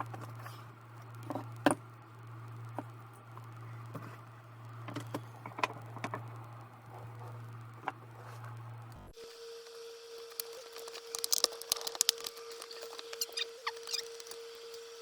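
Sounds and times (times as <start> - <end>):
steady low hum: 0.0 - 15.0
plastic parts clicking and tapping: 10.3 - 14.4.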